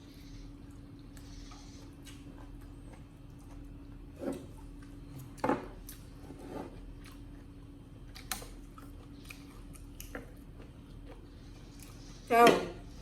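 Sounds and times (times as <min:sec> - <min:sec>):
faint steady hum: 0:00.0 - 0:13.0
monkeys crunching and chewing: 0:08.1 - 0:12.3.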